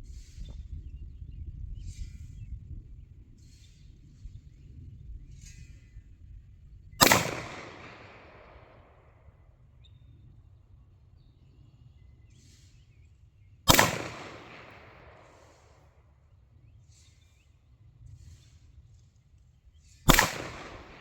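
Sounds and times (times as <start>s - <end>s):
gunshot: 7.0s - 8.9s, 13.7s - 15.7s, 20.1s - 21.0s.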